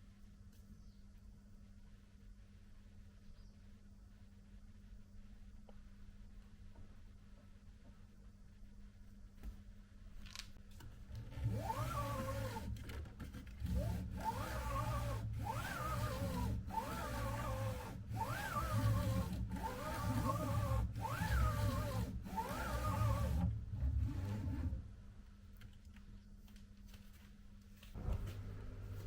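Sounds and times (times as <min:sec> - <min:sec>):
printer motors whining: 0:11.4 - 0:12.8, 0:13.6 - 0:24.7.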